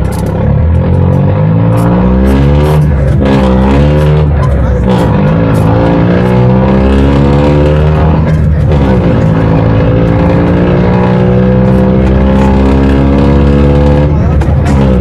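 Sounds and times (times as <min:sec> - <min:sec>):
bus engine running loud: 0:00.0 - 0:15.0.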